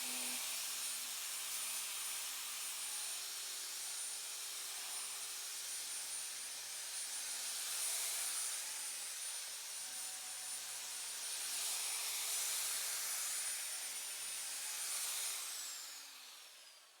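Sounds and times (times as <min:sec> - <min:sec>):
electric motor whining: 0:00.0 - 0:00.4.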